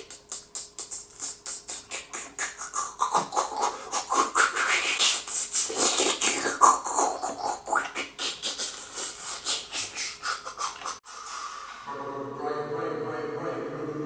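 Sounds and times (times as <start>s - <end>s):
fast rhythmic clicking: 0.0s - 11.0s.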